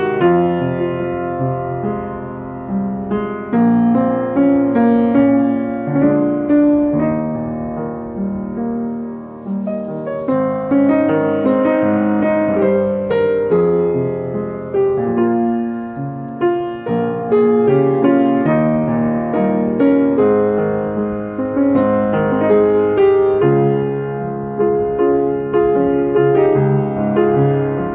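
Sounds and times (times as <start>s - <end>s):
gentle piano music: 0.0s - 27.9s.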